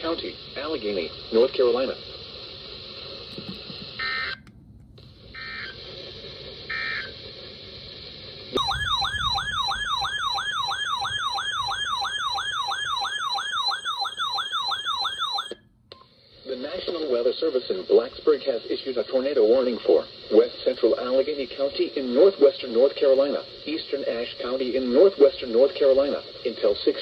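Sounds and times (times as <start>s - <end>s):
weather radio hiss: 0.0s - 4.4s, 5.0s - 8.7s, 16.1s - 27.0s
wailing electronic alert siren: 4.0s - 4.4s, 5.3s - 5.8s, 6.7s - 7.1s, 8.6s - 15.6s
data tone bursts: 8.6s - 15.3s.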